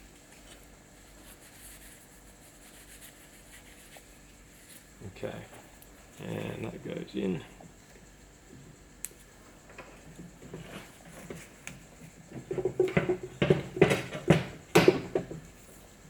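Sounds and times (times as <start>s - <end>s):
metallic clinks and scrapes of tools: 9.6s - 15.5s.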